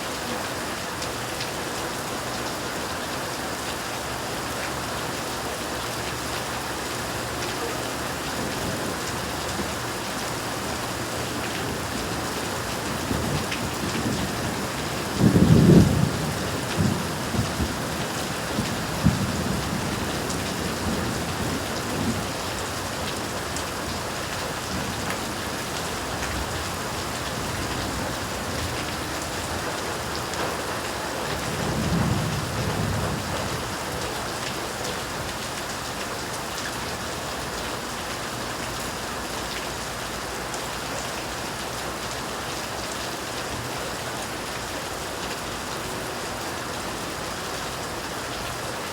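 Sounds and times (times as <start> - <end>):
steady rain falling: 0.0 - 48.9
thunder rumbling: 11.3 - 24.1, 24.7 - 33.9.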